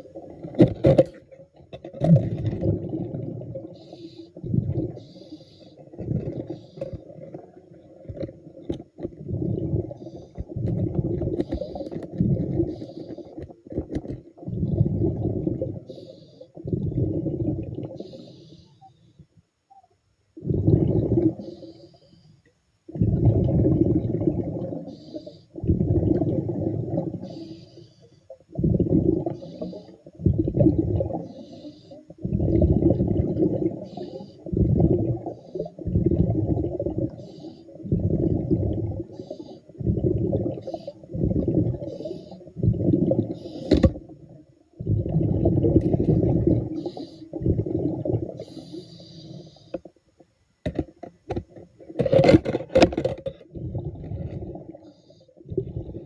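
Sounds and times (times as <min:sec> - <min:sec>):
diver exhaling bubbles underwater: 0:01.9 - 0:05.1, 0:05.8 - 0:16.0, 0:16.6 - 0:18.3, 0:20.4 - 0:21.7, 0:22.9 - 0:27.4, 0:28.5 - 0:31.6, 0:32.2 - 0:49.5, 0:53.4 - 0:56.0
faint hiss: 0:03.4 - 0:08.1, 0:09.7 - 0:13.8, 0:15.6 - 0:17.1, 0:17.9 - 0:20.4, 0:21.2 - 0:23.0, 0:24.7 - 0:28.6, 0:29.2 - 0:30.4, 0:31.0 - 0:32.3, 0:33.5 - 0:36.2, 0:36.8 - 0:44.8, 0:45.9 - 0:47.6, 0:48.3 - 0:50.6.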